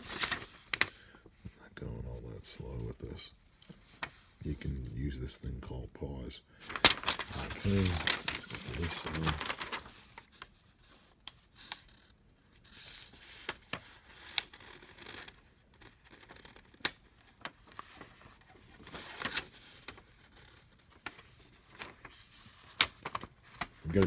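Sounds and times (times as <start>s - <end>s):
paper rustling: 0.0s - 1.1s, 3.6s - 4.8s, 6.6s - 24.0s
paper snapping: 6.6s - 9.9s.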